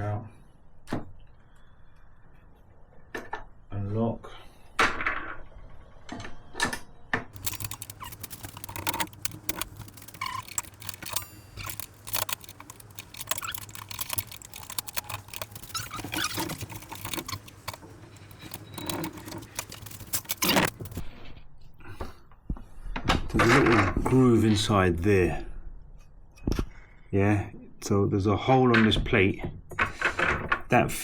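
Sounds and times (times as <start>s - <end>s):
metal and plastic parts rattling: 7.4s - 21.1s.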